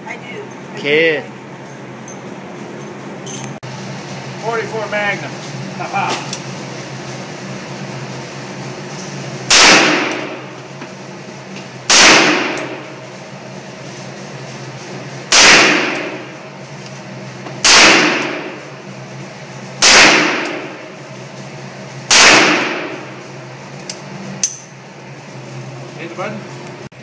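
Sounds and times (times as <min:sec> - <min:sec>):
revolver shots echoing: 0:09.5 - 0:10.5, 0:11.9 - 0:12.9, 0:15.3 - 0:16.3, 0:17.6 - 0:18.6, 0:19.8 - 0:20.8, 0:22.1 - 0:23.1.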